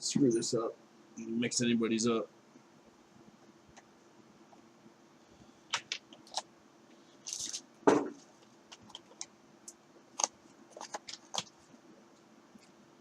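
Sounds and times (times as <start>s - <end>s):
thump on table: 7.9s - 8.2s.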